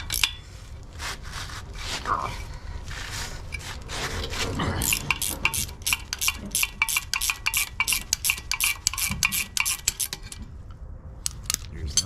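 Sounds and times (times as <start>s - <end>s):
ratchet wrench clicking: 0.0s - 0.4s, 4.8s - 10.4s.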